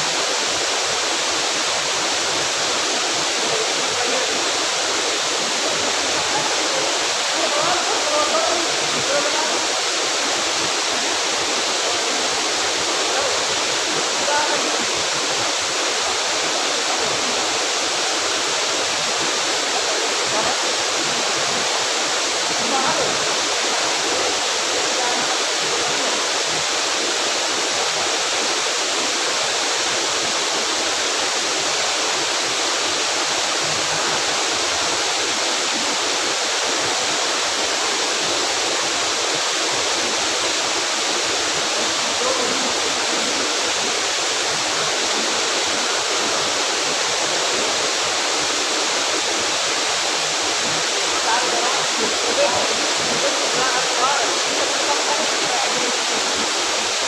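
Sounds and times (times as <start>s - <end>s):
waterfall roaring: 0.0s - 57.0s.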